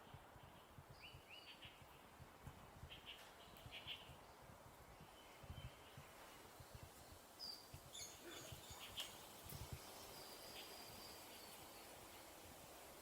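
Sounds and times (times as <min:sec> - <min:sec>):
faint bird chirps: 0:07.4 - 0:11.9.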